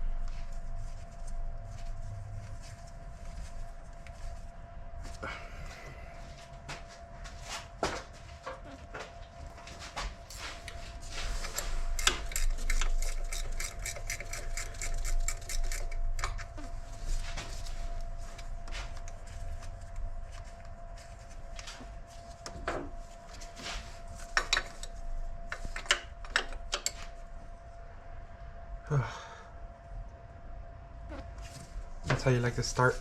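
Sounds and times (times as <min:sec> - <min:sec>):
ratchet wrench clicking: 0:11.4 - 0:16.4.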